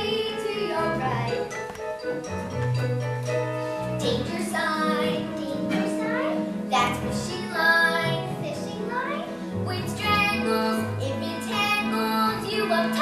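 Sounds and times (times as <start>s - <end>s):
instrumental accompaniment: 0.0s - 13.0s
children singing: 9.6s - 13.0s.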